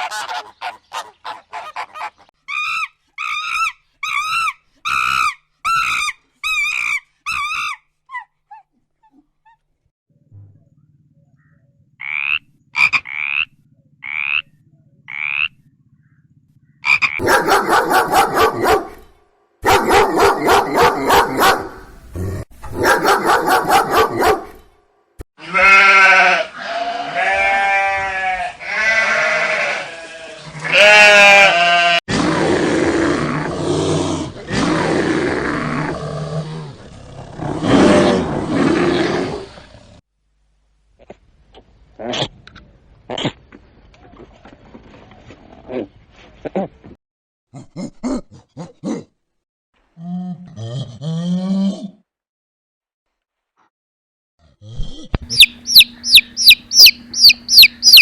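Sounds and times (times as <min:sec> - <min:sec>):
long rough rasping calls: 0:00.0 - 0:07.8, 0:55.2 - 0:58.0
pitched calls bending up and down: 0:54.9 - 0:58.0
rapid pulsing animal calls: 0:55.2 - 0:58.0
short rising chirps: 0:55.3 - 0:58.0.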